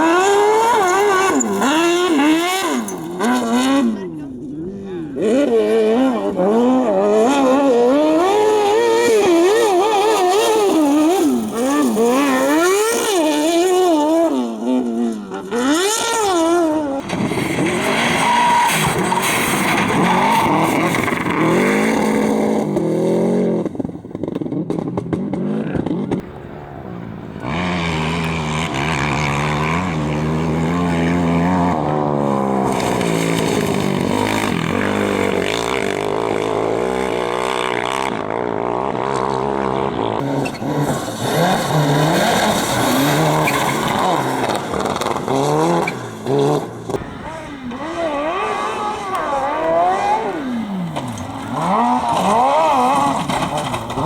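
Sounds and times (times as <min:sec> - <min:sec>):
racing engines revving: 0:00.0 - 0:54.0.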